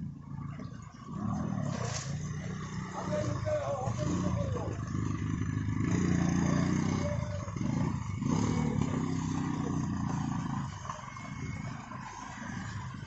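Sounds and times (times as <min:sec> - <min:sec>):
street noise: 0:00.0 - 0:13.0
vehicle engine revving: 0:00.0 - 0:13.0.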